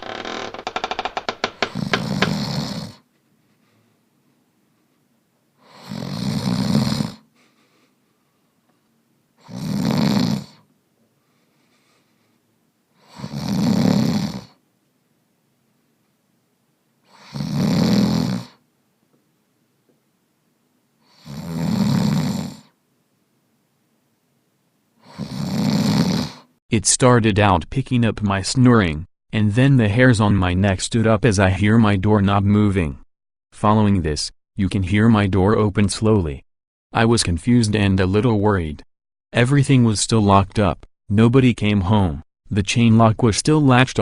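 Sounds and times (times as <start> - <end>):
man snoring: 1.4 - 3.0, 5.6 - 7.2, 9.4 - 10.6, 13.0 - 14.6, 17.1 - 18.6, 21.1 - 22.7, 25.0 - 26.5.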